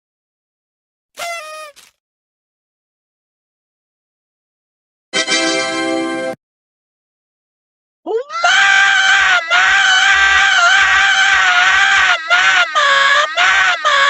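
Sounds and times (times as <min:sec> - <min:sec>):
high-pitched scream: 0:01.2 - 0:01.8, 0:08.1 - 0:14.0.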